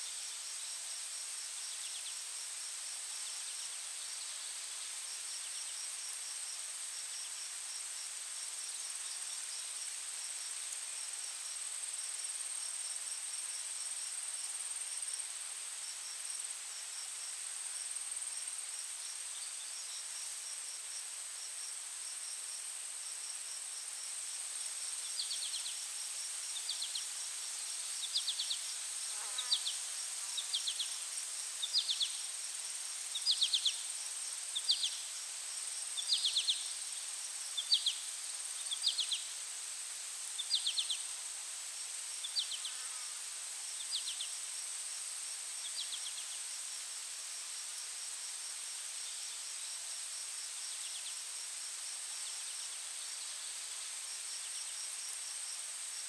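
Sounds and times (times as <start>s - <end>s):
insects droning with pulsing trill: 0.1s - 56.0s
short insect chirps: 23.0s - 46.8s.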